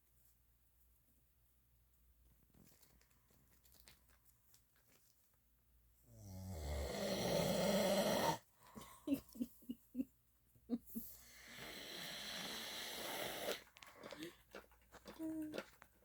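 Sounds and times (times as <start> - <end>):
person snoring: 6.1 - 8.4, 11.2 - 13.6.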